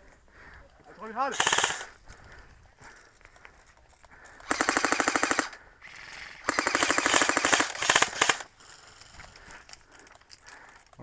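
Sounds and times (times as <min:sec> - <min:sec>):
airsoft gun firing full-auto: 0:01.3 - 0:01.9, 0:04.4 - 0:08.5.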